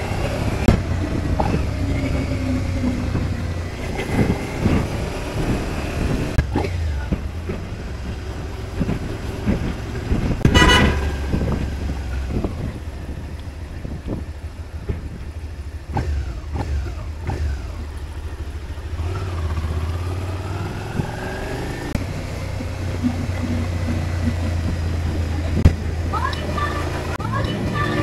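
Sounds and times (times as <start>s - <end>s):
city traffic: 0.0s - 28.0s
motorcycle engine running: 0.0s - 28.0s
vehicle horn beep: 10.5s - 11.3s.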